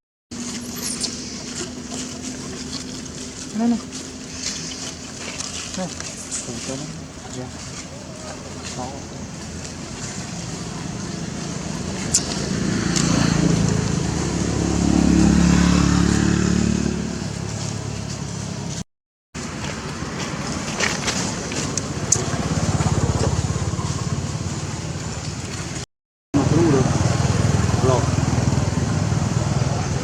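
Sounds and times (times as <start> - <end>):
vehicle engine running: 19.4 - 25.8, 26.4 - 30.0.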